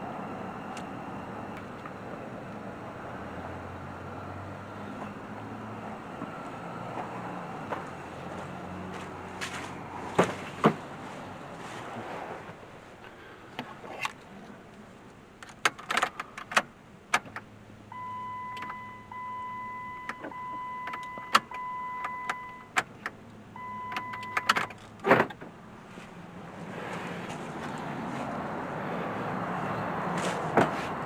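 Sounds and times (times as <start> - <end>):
electronic car warning tone: 17.9 - 22.8, 23.6 - 24.6.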